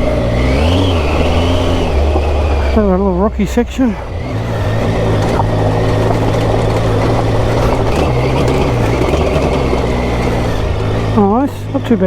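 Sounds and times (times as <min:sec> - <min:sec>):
motorcycle engine running: 0:00.0 - 0:12.0
tyres on rocky dirt track: 0:00.0 - 0:12.0
wind noise: 0:04.2 - 0:11.2.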